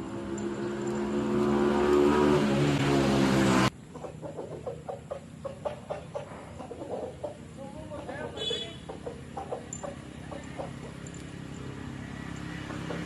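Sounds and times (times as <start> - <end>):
vehicle engine running: 0.0 - 4.1, 8.8 - 13.0
chicken clucking: 3.9 - 11.0.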